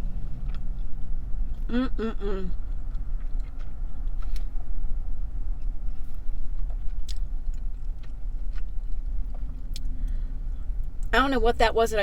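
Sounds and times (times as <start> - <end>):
low rumble inside car: 0.0 - 12.0
person chewing sandwich: 2.6 - 9.9.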